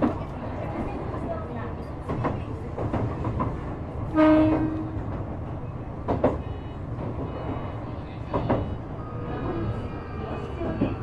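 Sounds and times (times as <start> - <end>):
electric train rumbling: 0.0 - 11.0
train horn blast: 4.1 - 5.1.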